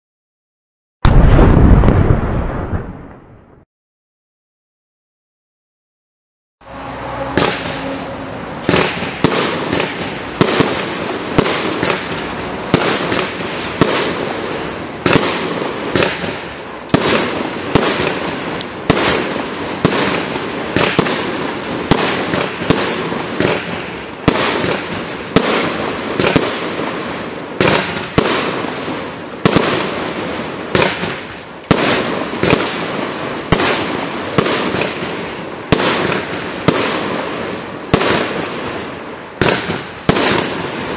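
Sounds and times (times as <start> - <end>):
fireworks crackling and rushing: 1.0 - 3.6, 6.6 - 40.9
fireworks launch shots: 1.0 - 3.6, 6.7 - 40.9.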